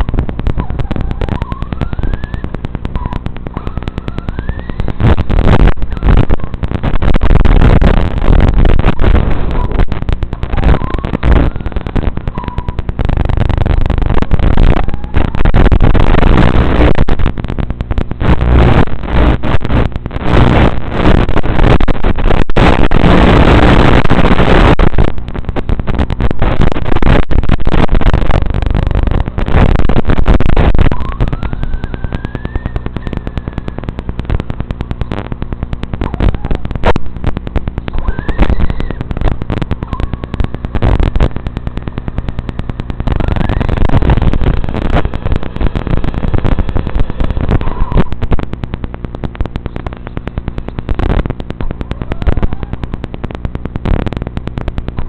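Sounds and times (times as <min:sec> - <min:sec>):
distorted rc car running noise: 0:00.0 - 0:17.0, 0:30.2 - 0:34.3, 0:37.8 - 0:48.4.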